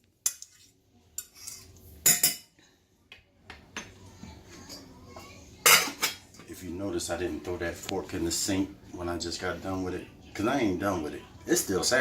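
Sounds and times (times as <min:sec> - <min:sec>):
fork scraping a pot: 0:00.2 - 0:02.0.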